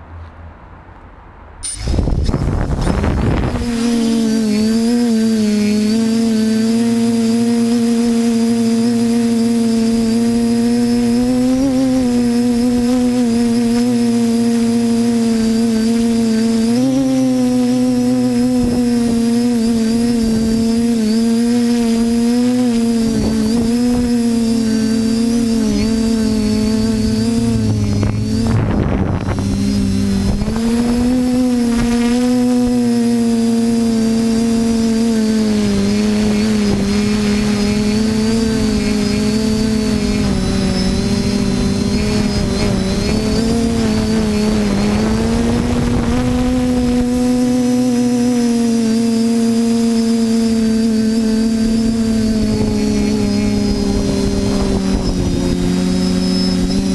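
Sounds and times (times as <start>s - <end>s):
rush of noise: 0.6s - 6.5s, 17.6s - 48.4s
drone propellers whining: 1.6s - 56.9s.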